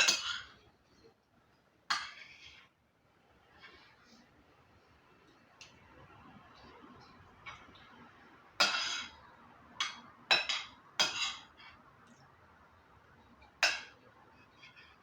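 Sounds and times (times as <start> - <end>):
cutlery clinking on a dish: 0.0 - 0.6, 1.9 - 2.7, 8.6 - 9.2, 9.8 - 11.8, 13.4 - 15.0.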